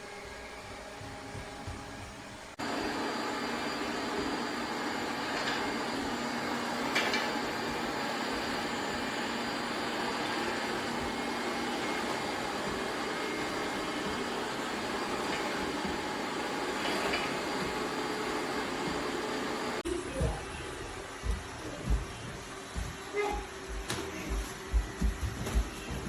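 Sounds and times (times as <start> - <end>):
robot vacuum whirring: 0.0 - 19.7.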